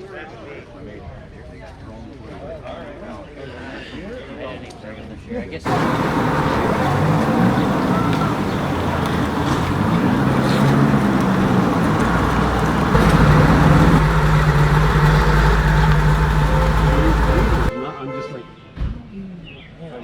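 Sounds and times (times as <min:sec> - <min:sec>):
car engine rumbling: 0:05.7 - 0:17.7.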